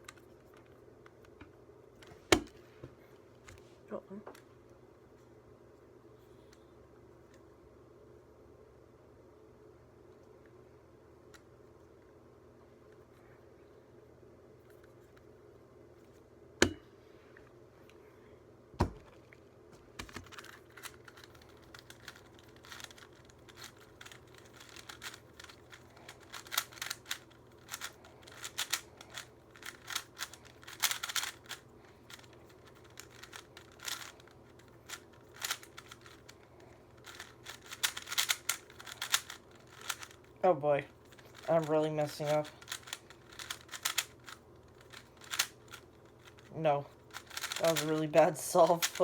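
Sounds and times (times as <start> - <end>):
puzzle cube layers clicking: 20.0 - 34.2, 34.9 - 36.2, 37.0 - 40.2, 41.1 - 46.5, 47.1 - 49.0.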